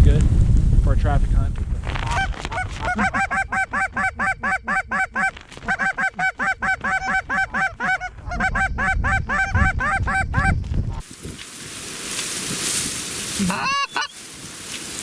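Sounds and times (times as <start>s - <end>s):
wind rumbling on microphone: 0.0s - 4.5s, 6.6s - 13.6s
goose honking: 2.1s - 10.5s, 13.4s - 14.2s.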